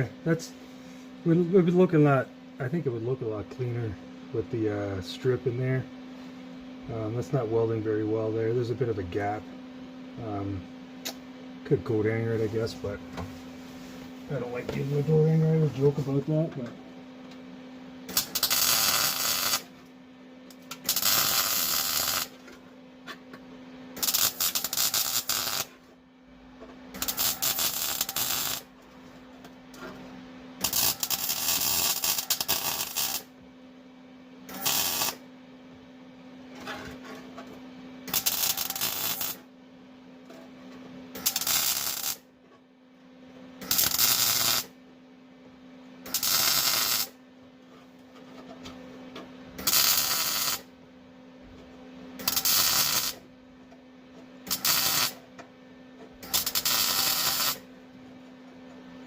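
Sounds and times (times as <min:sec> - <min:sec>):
steady low hum: 0:00.0 - 0:59.0
crackling welding arc: 0:18.1 - 0:19.7, 0:20.5 - 0:22.4, 0:24.0 - 0:25.7, 0:27.0 - 0:28.7, 0:30.6 - 0:33.3, 0:34.5 - 0:35.2, 0:38.1 - 0:39.5, 0:41.2 - 0:42.2, 0:43.6 - 0:44.7, 0:46.0 - 0:47.2, 0:49.6 - 0:50.7, 0:52.2 - 0:53.2, 0:54.4 - 0:55.2, 0:56.2 - 0:57.7.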